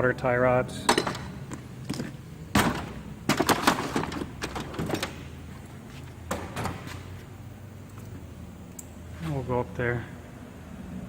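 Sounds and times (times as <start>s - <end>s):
metal knocks and clunks: 0.8s - 5.3s, 6.2s - 7.1s.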